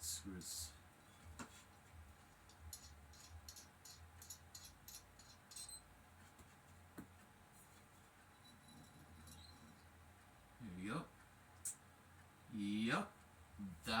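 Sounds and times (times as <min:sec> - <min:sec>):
light fixture parts clicking: 0:02.5 - 0:05.8.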